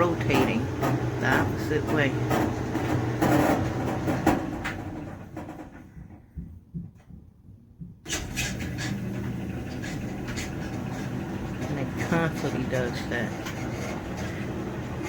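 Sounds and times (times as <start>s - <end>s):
dryer drum knocks: 0.0s - 8.1s
clothes dryer drum running: 0.0s - 15.0s.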